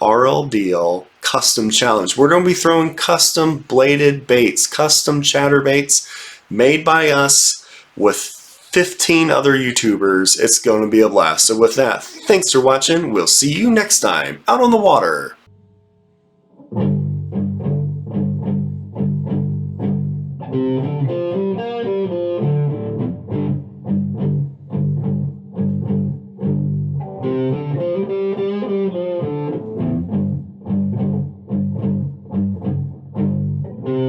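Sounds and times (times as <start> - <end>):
guitar instrumental music: 15.0 - 34.0.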